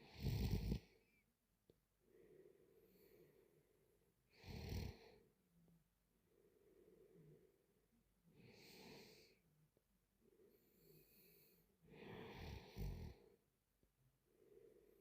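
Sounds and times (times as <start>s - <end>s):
woman snoring breaths: 0.0s - 1.0s, 4.3s - 5.3s, 8.4s - 9.4s, 10.5s - 13.4s.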